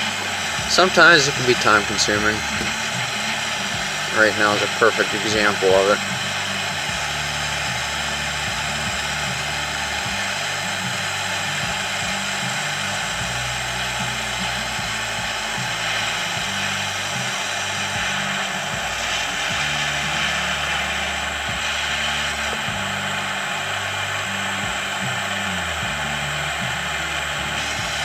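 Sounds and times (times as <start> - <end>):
propane torch hissing: 0.0 - 28.0.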